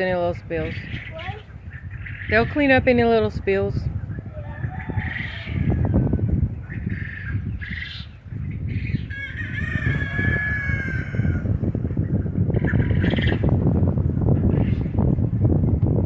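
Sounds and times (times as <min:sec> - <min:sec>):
chickens calling: 0:00.1 - 0:13.7, 0:14.3 - 0:15.1
rooster crowing: 0:04.4 - 0:06.2, 0:09.1 - 0:11.6.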